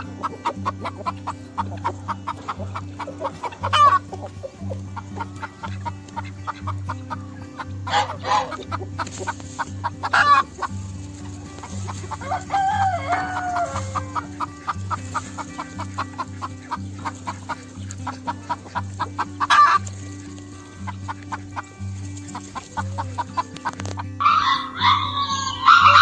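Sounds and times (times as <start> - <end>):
background music with bass: 0.0 - 26.0
fowl clucking: 0.0 - 26.0
rooster crowing: 7.9 - 8.6, 11.5 - 16.1, 24.2 - 26.0.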